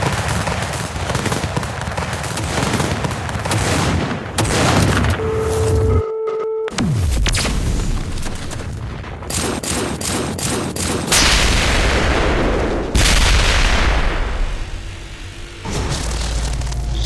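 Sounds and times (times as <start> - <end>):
gunfire-like cracks and bangs: 0.0 - 5.2, 7.1 - 14.6
loud blasts with deep rumble: 11.0 - 17.0.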